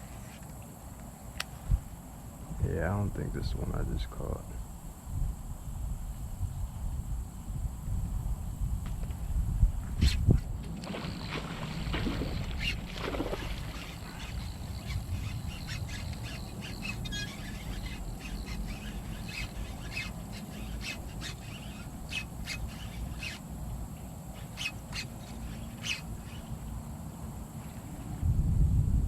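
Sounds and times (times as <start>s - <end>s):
birds chirping: 11.0s - 27.0s.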